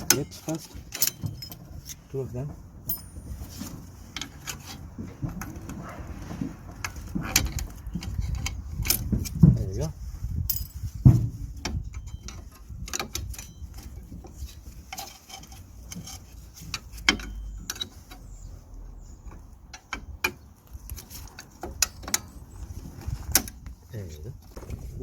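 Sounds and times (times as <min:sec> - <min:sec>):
metallic clicks of brake hardware: 0:00.0 - 0:02.1, 0:14.9 - 0:18.3
sharp metal knock: 0:02.9 - 0:03.3.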